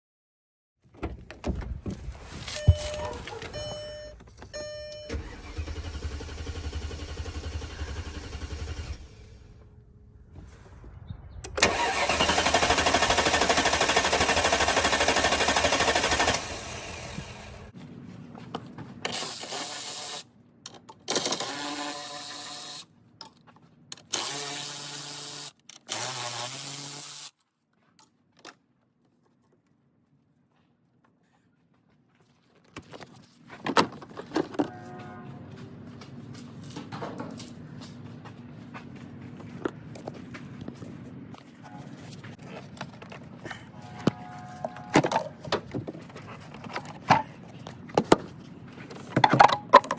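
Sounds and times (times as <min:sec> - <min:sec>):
car engine cranking on starter: 0:04.6 - 0:09.7, 0:11.5 - 0:17.7.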